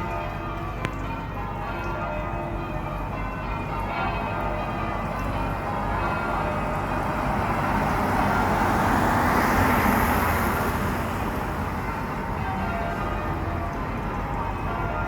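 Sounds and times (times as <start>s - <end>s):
church bells ringing: 0.0s - 15.0s
vehicle passing by: 7.3s - 11.8s.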